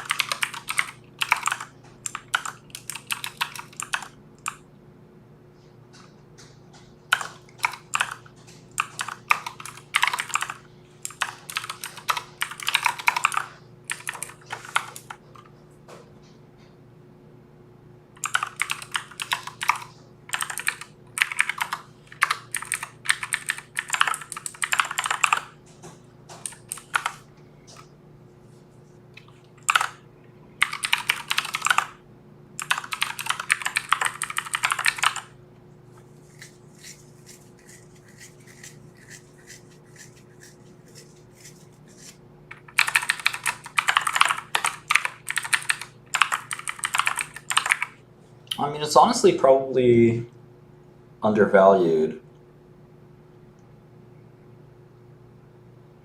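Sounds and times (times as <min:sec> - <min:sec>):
computer keyboard typing: 0:00.0 - 0:04.6, 0:07.1 - 0:15.2, 0:18.2 - 0:25.6, 0:26.4 - 0:27.3, 0:29.2 - 0:30.0, 0:30.6 - 0:32.0, 0:32.6 - 0:35.3, 0:37.6 - 0:48.0
faint steady hum: 0:00.0 - 0:56.0.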